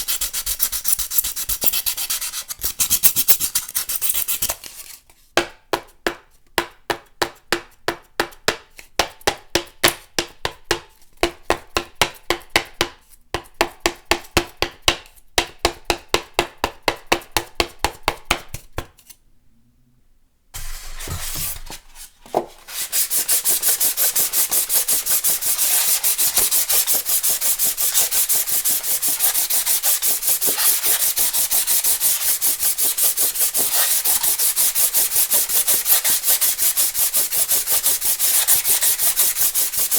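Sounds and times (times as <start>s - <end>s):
styrofoam squeaking and scraping: 20.6s - 34.6s, 35.3s - 39.8s
foam board squeaking: 22.6s - 34.4s.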